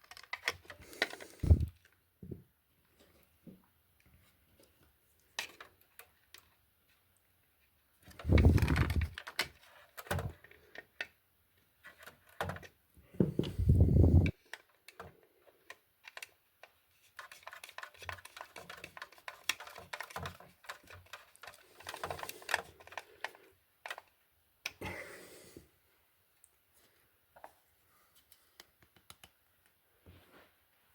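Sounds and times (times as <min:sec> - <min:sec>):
clicks and rattles of wires: 0:00.0 - 0:02.0, 0:04.6 - 0:06.6, 0:08.0 - 0:11.2, 0:11.8 - 0:24.8.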